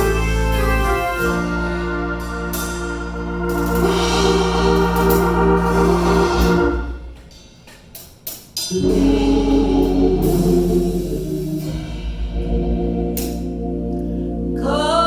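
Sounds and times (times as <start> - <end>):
gospel choir singing: 0.8 - 7.1, 8.7 - 15.0.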